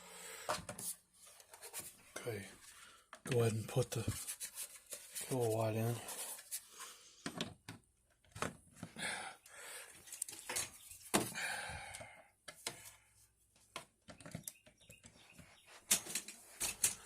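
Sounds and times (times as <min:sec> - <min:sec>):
scraping and rubbing: 0:00.8 - 0:07.0.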